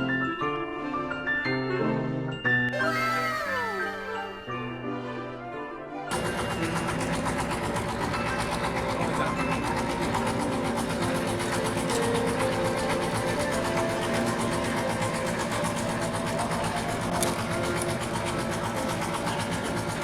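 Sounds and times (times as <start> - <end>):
boat engine running: 6.1 - 20.0.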